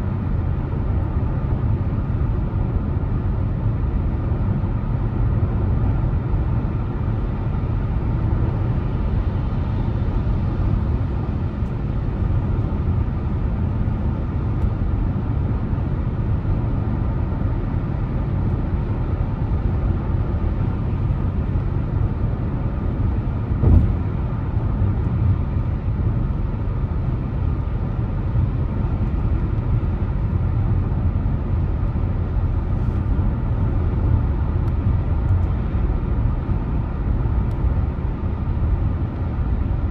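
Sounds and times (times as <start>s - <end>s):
car driving rumble: 19.8s - 39.8s
thump of road bump: 23.6s - 24.1s.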